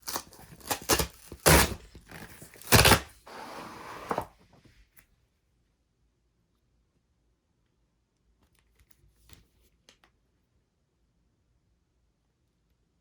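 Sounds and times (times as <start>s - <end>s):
scraping rustle: 2.3s - 4.4s.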